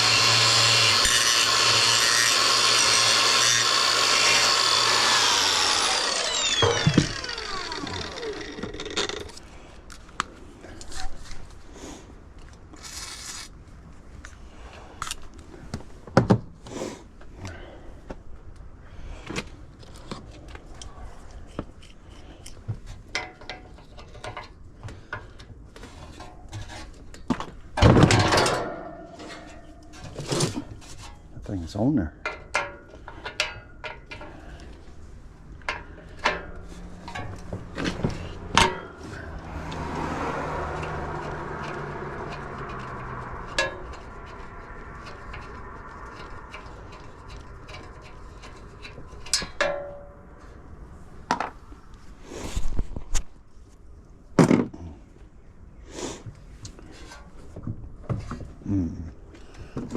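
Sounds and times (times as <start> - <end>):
power tool whining: 0.0 - 9.4.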